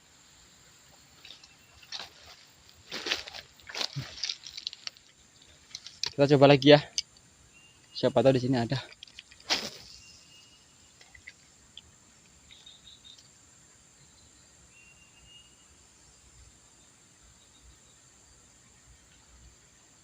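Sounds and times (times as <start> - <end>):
bird or insect chirps: 0.0 - 20.0
insects buzzing: 0.0 - 20.0
faint ticks: 11.0 - 13.4.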